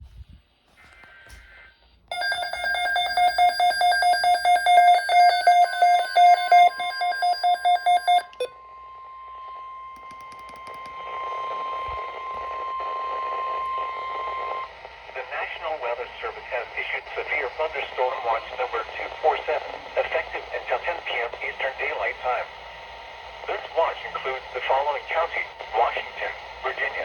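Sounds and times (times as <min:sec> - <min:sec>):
electronic alarm beeping rapidly: 0:02.1 - 0:08.5
steady warning alarm tone: 0:02.1 - 0:14.7
radio static: 0:10.7 - 0:27.0.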